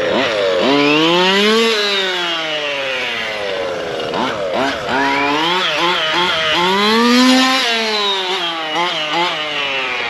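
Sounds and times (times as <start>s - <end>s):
two-stroke engine throttle blips: 0.0s - 10.0s.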